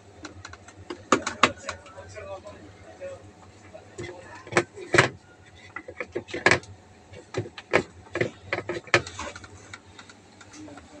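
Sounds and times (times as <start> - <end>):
plastic filter clicking and knocking: 0.2 - 1.8, 7.3 - 9.5.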